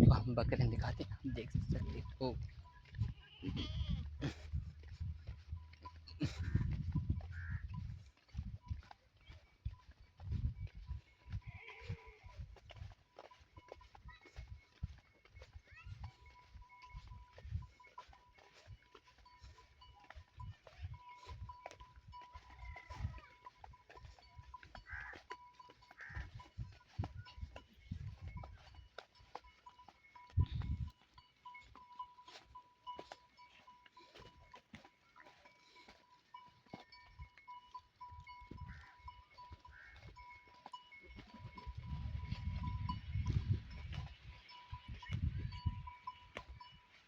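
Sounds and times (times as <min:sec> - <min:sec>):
goats moving: 0:00.0 - 0:47.0
hoof clicks: 0:00.0 - 0:47.0
goat bleating: 0:02.8 - 0:04.9, 0:05.9 - 0:07.9, 0:11.3 - 0:12.4, 0:24.2 - 0:27.7
bell tinkling: 0:13.3 - 0:47.0.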